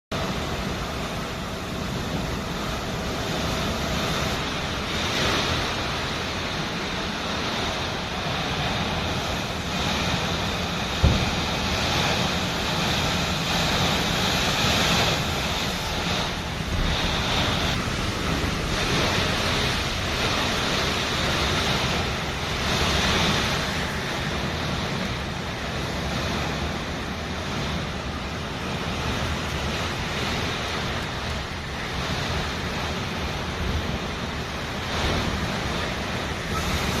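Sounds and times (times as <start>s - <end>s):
strong gusting wind: 0.1s - 37.0s
wind rumbling on microphone: 0.1s - 37.0s
sharp knock: 11.0s - 11.4s.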